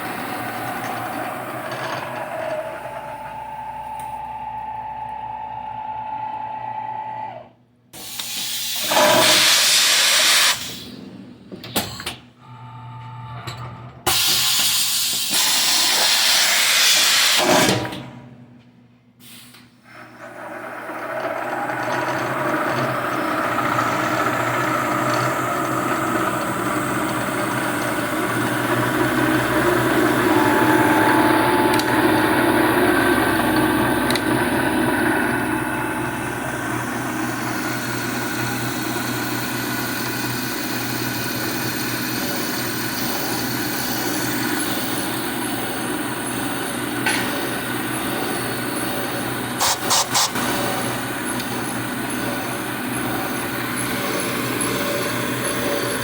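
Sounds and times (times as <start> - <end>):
milling machine whine: 0.0 - 7.4, 20.0 - 56.0
milling machine machining noise: 20.1 - 56.0
loud hissing blasts: 49.6 - 50.6.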